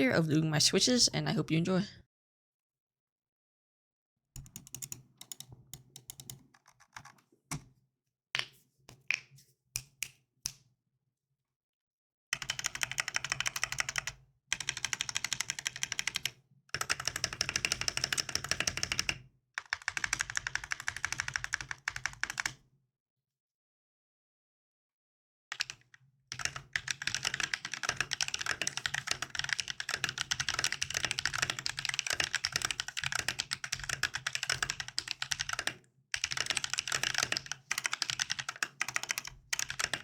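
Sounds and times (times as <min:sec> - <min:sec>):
mechanical keyboard typing: 0:04.4 - 0:07.2, 0:12.4 - 0:22.6, 0:25.5 - 0:40.0.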